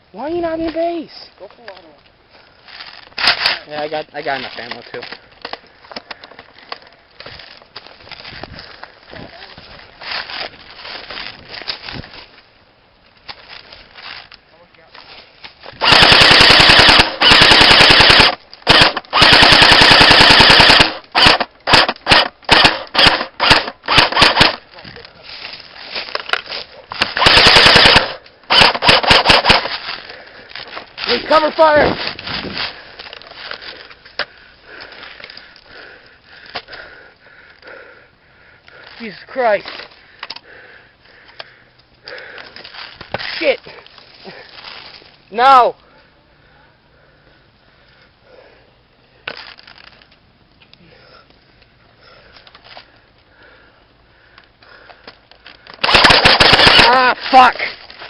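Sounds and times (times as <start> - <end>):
airsoft guns firing: 15.8 - 24.6, 27.0 - 29.8, 55.8 - 57.5
sharp crack: 15.8 - 24.6, 26.2 - 30.2, 55.8 - 57.7.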